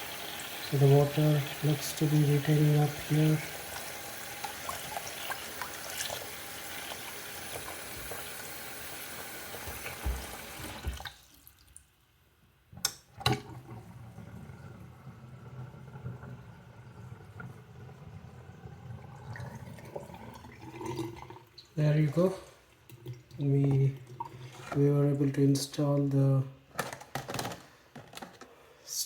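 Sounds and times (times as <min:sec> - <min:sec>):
faucet running into sink: 0:00.0 - 0:11.6, 0:13.2 - 0:22.3.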